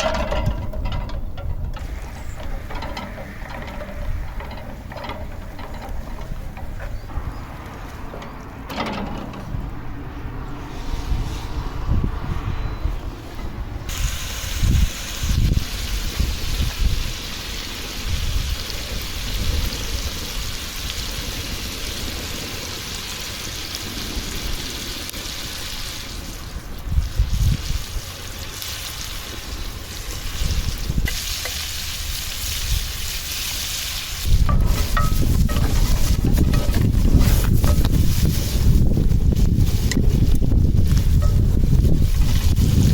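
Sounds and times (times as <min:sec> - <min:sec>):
wind rumbling on microphone: 0:00.0 - 0:42.9
food sizzling in a pan: 0:27.1 - 0:36.7.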